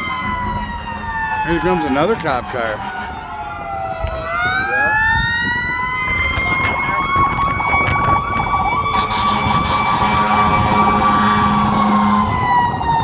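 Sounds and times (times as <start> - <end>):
emergency vehicle siren wailing: 0.0 - 13.0
low steady drone: 6.8 - 12.7.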